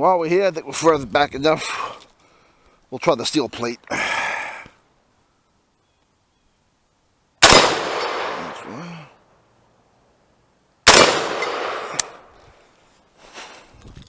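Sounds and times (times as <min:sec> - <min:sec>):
rifle shots echoing: 0:07.4 - 0:08.8, 0:10.9 - 0:12.3.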